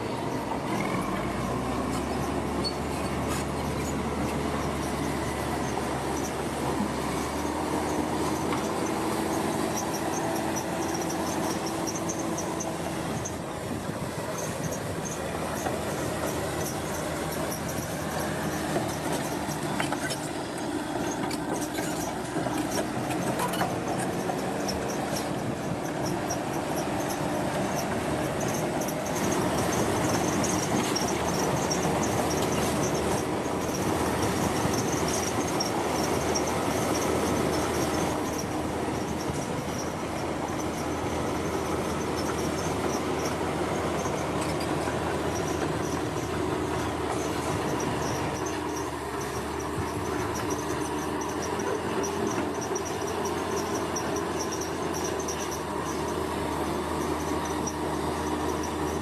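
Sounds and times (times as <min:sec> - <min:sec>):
heavy construction machinery running: 0:00.0 - 0:59.0
high-pitched metallic squeaks: 0:00.7 - 0:59.0.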